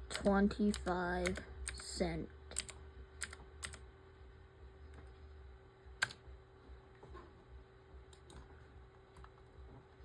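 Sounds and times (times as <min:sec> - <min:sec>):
faint steady hum: 0:00.0 - 0:10.0
keyboard keystrokes: 0:02.5 - 0:03.8.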